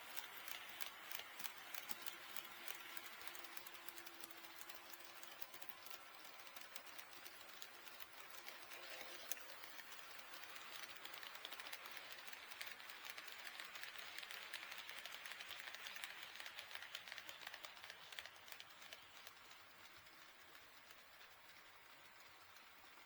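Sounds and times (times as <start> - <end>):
light mechanical whir: 0.0 - 23.0
model train wheels clicking: 0.0 - 23.0.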